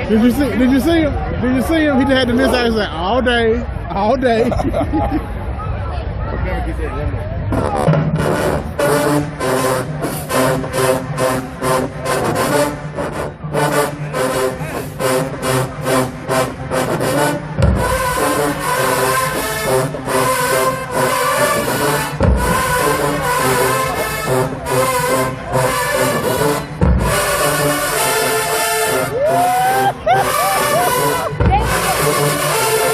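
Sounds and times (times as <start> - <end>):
cymbals: 7.5 - 32.9
marching band brass: 7.5 - 32.9.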